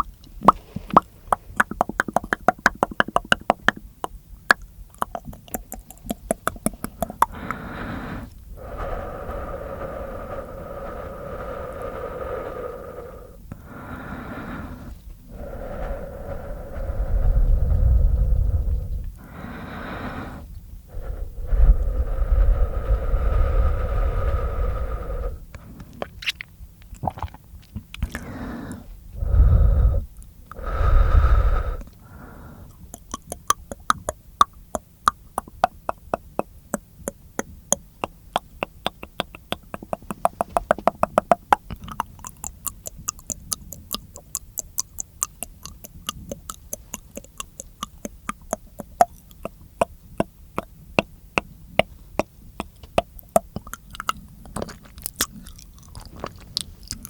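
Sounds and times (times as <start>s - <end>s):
wet mouth clicks: 0.0s - 13.6s, 14.6s - 19.3s, 20.9s - 57.0s
breathy blows into microphone: 7.0s - 26.1s, 28.1s - 32.9s.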